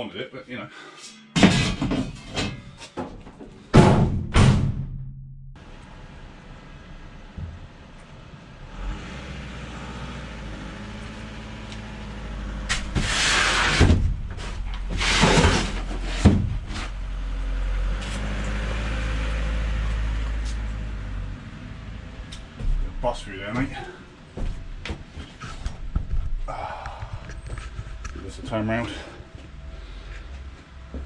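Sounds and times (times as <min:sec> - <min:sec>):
sharp knocks: 0:03.7 - 0:05.2
vehicle engine running: 0:05.6 - 0:13.0, 0:15.7 - 0:26.0.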